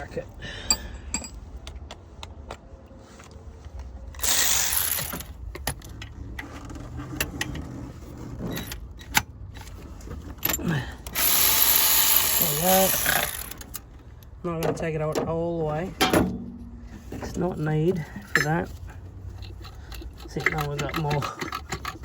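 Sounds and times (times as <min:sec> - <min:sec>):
metal tools clinking on metal: 0:17.9 - 0:18.8.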